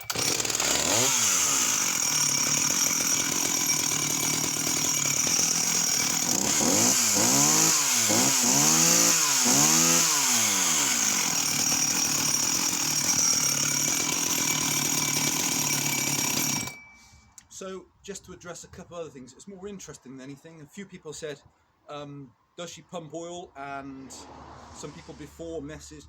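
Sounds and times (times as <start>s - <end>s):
chainsaw idling and revving: 0.0s - 16.9s.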